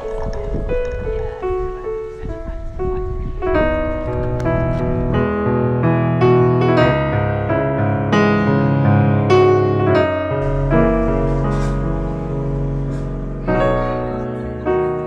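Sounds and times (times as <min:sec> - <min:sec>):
instrumental music with bass line: 0:03.6 - 0:15.0.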